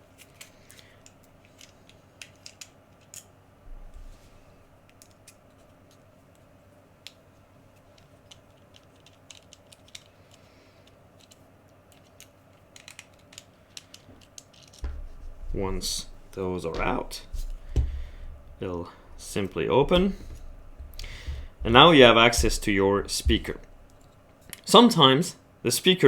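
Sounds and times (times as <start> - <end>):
dull bump: 14.8 - 24.0
screwdriver clicking and tapping: 19.2 - 24.0.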